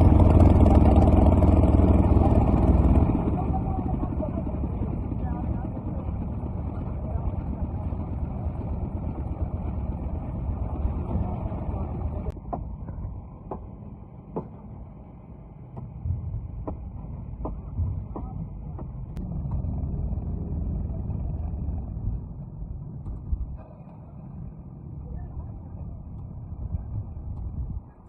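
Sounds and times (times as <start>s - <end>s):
concrete mixer engine running: 0.0s - 12.4s
sharp knocks: 14.3s - 14.6s, 16.6s - 19.6s.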